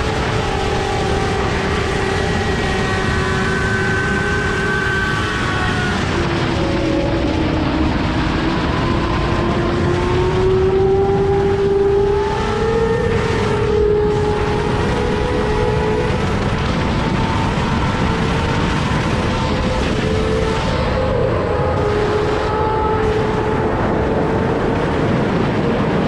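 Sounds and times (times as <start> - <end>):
engine running steadily: 0.0 - 26.0
loud rushing noise: 0.0 - 26.0.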